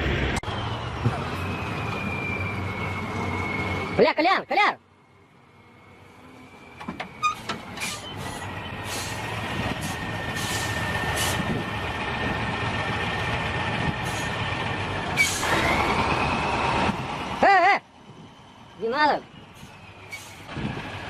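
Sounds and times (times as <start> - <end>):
heavy truck engine running: 5.1 - 21.0.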